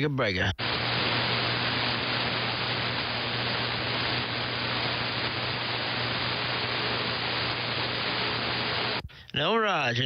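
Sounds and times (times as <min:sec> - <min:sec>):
radio static hiss: 0:00.4 - 0:09.1.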